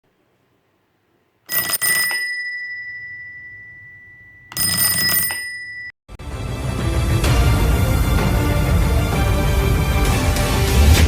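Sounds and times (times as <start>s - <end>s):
metal bell ringing: 1.5s - 5.9s.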